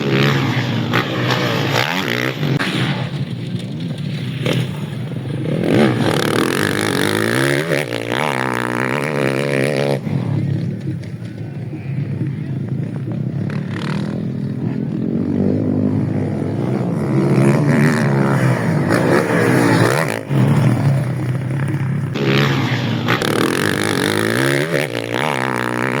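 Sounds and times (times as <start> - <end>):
motorcycle engines revving: 0.0 - 26.0.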